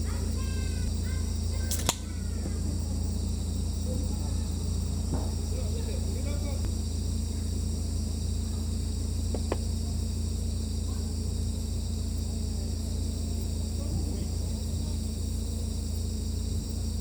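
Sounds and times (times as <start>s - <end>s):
crickets chirring: 0.0s - 17.0s
steady low hum: 0.0s - 17.0s
short click: 1.7s - 2.0s.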